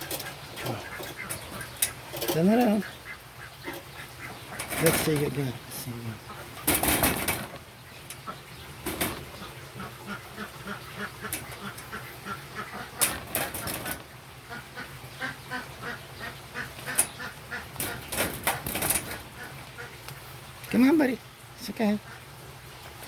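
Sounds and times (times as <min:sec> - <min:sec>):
sharp rustling clicks: 0:06.6 - 0:09.3, 0:13.0 - 0:14.0, 0:16.8 - 0:20.8.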